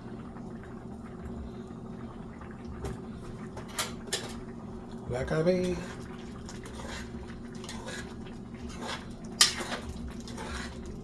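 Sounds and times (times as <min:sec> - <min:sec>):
pots simmering: 0:00.0 - 0:11.0.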